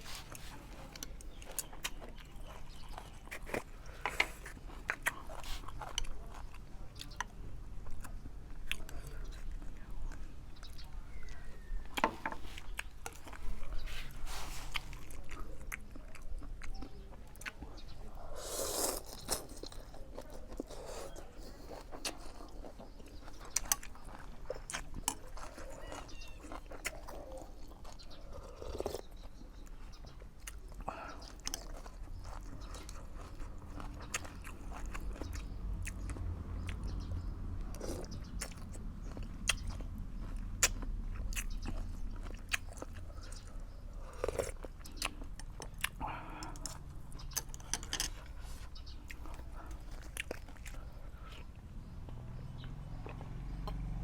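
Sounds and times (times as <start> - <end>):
person chewing food: 0.0 - 54.0.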